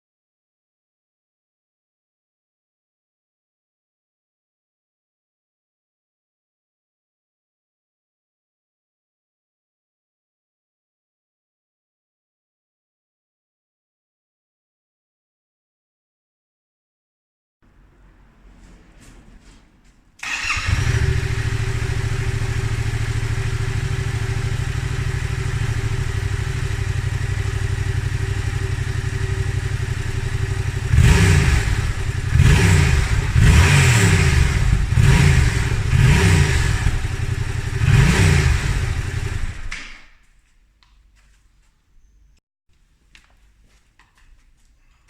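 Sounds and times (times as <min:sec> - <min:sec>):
motorcycle engine idling and revving: 0:20.2 - 0:39.8.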